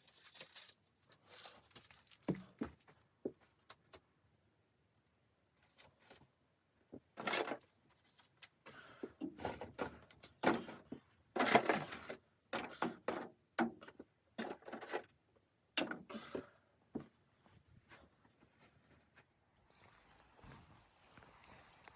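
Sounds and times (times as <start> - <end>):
camping gear rustling and knocking: 1.4 - 3.6, 6.9 - 19.3.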